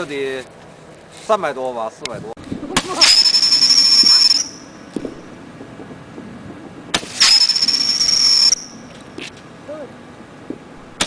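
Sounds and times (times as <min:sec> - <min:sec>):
firework crack: 0:02.4 - 0:11.0
firework whistle: 0:02.7 - 0:05.4, 0:06.9 - 0:09.0.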